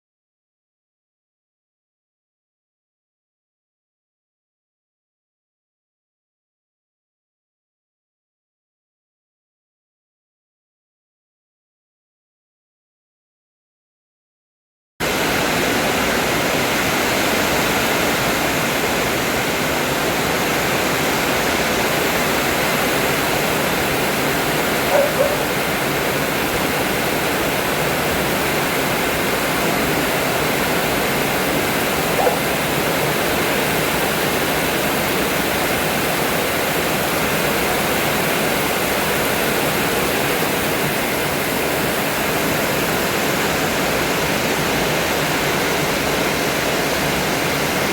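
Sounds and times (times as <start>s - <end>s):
rain: 15.0s - 47.9s
strong wind: 15.0s - 47.9s.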